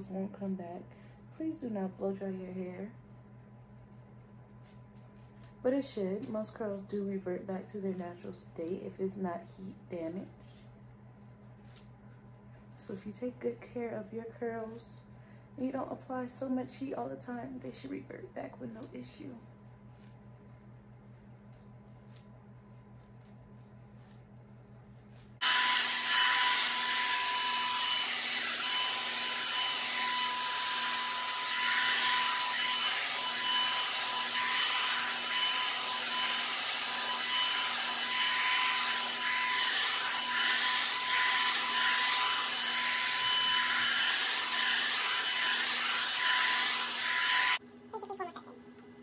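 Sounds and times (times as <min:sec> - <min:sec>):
hot air brush dryer blowing: 0:25.4 - 0:47.6.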